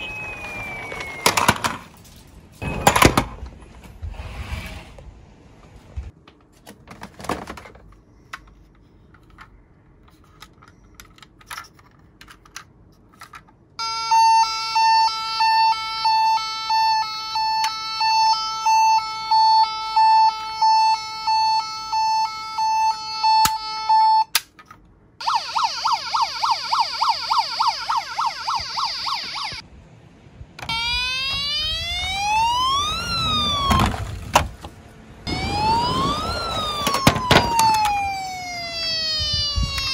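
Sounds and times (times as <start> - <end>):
fast warbling siren: 0.0 - 1.5, 13.8 - 24.3, 25.2 - 29.6, 30.7 - 34.2, 35.3 - 39.9
rising siren wail: 0.0 - 1.6, 13.8 - 24.3, 25.2 - 29.6, 30.6 - 39.9
two-tone toy siren: 0.0 - 1.6, 13.8 - 24.4, 25.2 - 29.6, 30.6 - 34.2, 35.3 - 39.9
plastic toy cars rattling: 0.2 - 3.4, 6.4 - 13.7.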